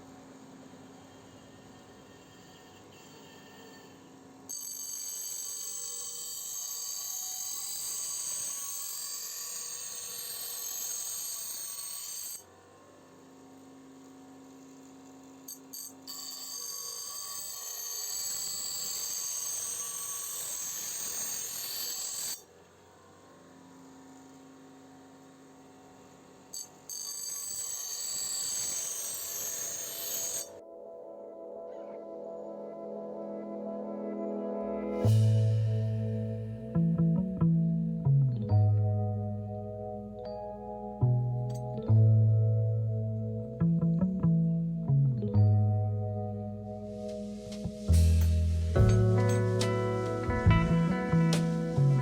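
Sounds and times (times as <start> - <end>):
power tool grinding metal: 0.8 - 12.4, 16.2 - 22.6, 26.5 - 30.6.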